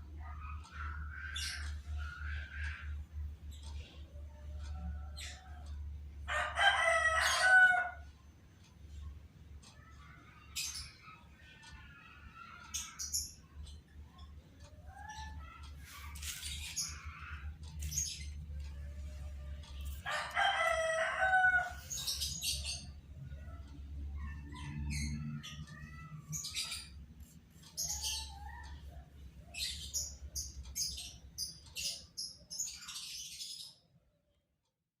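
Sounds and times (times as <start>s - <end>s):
small birds chirping: 0.0s - 34.0s
rooster crowing: 6.3s - 8.0s, 20.0s - 22.0s.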